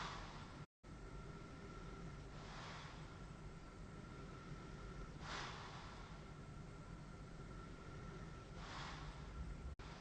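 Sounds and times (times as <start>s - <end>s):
soft airy breath through mask: 0.0s - 0.6s, 1.5s - 6.4s, 7.3s - 9.4s
low hum: 0.0s - 10.0s
faint steady tone: 0.8s - 10.0s.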